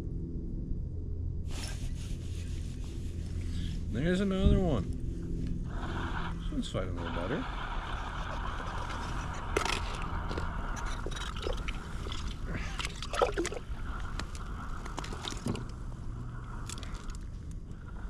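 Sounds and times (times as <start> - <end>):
water sloshing and splashing: 8.2 - 15.8.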